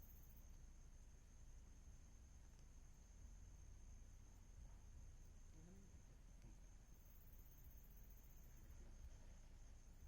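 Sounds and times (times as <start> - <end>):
faint click: 6.4 - 6.6.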